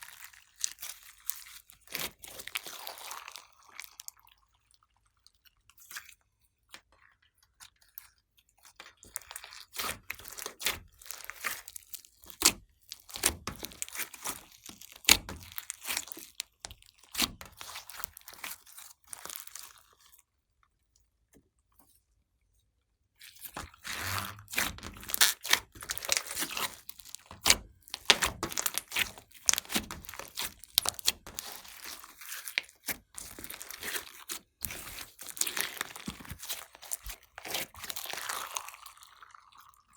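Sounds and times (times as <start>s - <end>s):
slime crackling and popping: 9.1s - 20.0s, 23.5s - 38.9s.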